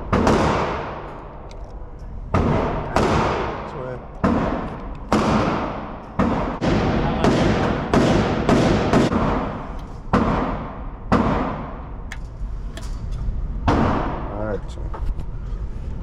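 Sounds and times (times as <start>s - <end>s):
gunshots: 0.0s - 1.1s, 2.3s - 11.8s.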